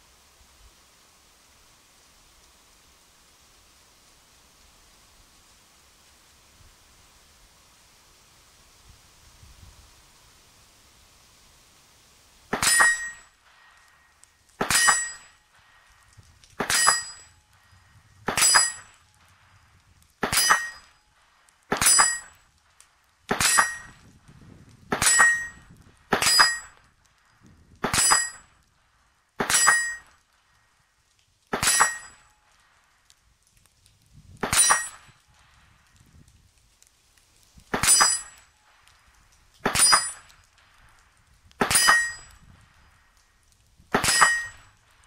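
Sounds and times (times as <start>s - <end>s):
rifle shots: 18.3s - 18.9s, 23.3s - 23.9s, 27.8s - 28.4s, 34.4s - 35.1s, 43.9s - 44.6s.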